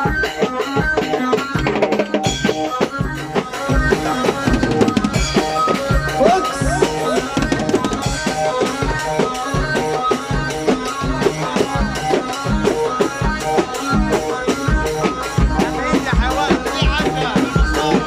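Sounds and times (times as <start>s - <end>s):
drum kit beat: 0.0s - 18.0s
bending melody notes: 4.4s - 8.7s.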